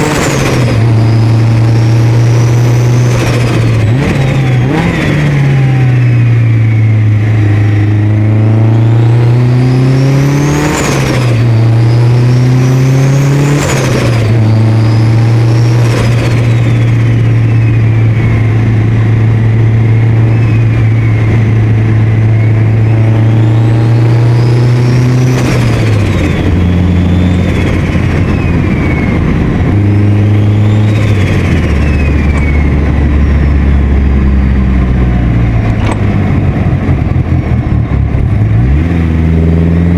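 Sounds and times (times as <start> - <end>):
car engine accelerating hard: 0.0 - 39.9
turbo whistle: 8.7 - 18.7, 19.7 - 33.8.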